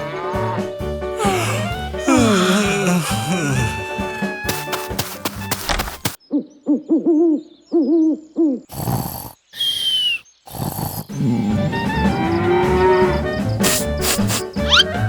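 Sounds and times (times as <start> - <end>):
background music: 0.0 - 6.0, 11.2 - 15.0
short hooting calls: 9.4 - 10.6
falling whistle: 9.6 - 10.3.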